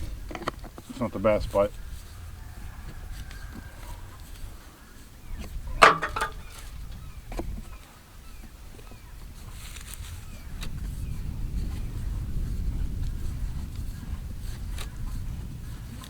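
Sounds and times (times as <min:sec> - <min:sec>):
wind rumbling on microphone: 0:00.0 - 0:16.0
knocking on wooden fence post: 0:05.8 - 0:06.5.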